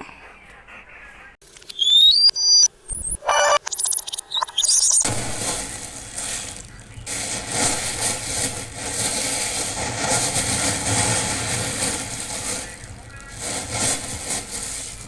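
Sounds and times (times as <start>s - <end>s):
bird call: 1.7s - 5.0s.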